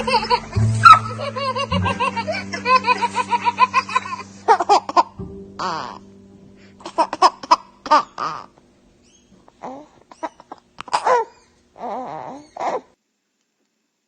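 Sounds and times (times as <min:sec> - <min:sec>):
people laughing: 0:00.0 - 0:05.2.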